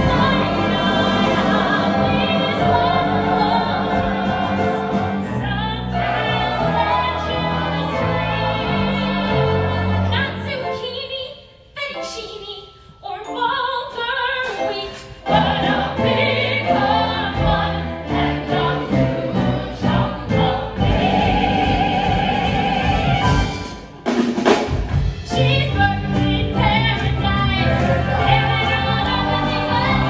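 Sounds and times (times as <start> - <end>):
voices singing with band: 0.0 - 10.0, 15.3 - 23.8, 26.0 - 30.0.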